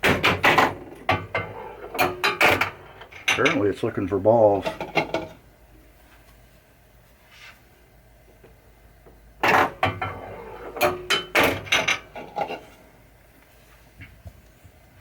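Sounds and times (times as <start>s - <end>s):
pinball solenoid clacks: 0.0s - 3.6s.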